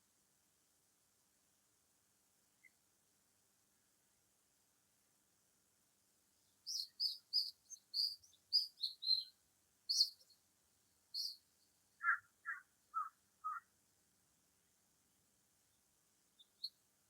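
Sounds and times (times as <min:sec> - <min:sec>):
bird chirping: 0:06.4 - 0:10.4, 0:11.1 - 0:13.7, 0:15.7 - 0:16.8
lower bird calls: 0:06.6 - 0:10.4, 0:11.1 - 0:11.4, 0:12.0 - 0:13.7.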